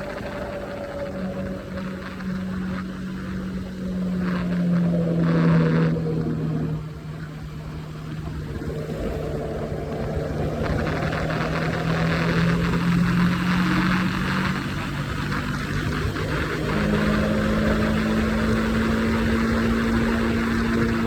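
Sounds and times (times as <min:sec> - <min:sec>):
motorcycle engine at speed: 0:00.0 - 0:21.0.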